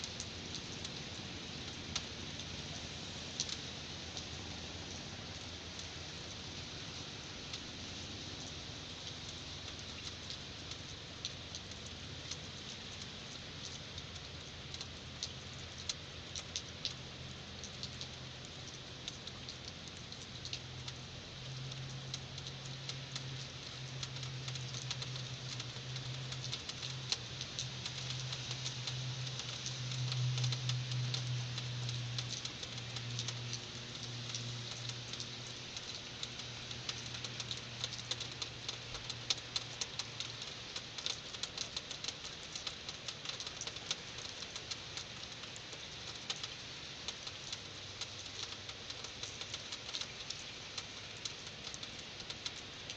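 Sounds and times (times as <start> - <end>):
heavy rain pattering: 0.0 - 52.9.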